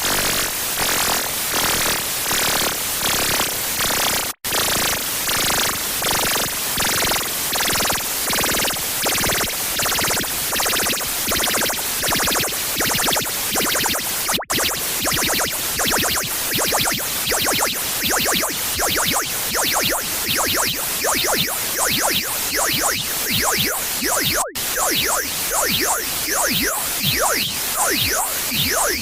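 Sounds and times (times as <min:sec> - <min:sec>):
pulsing distorted harsh noise: 0:07.8 - 0:29.0.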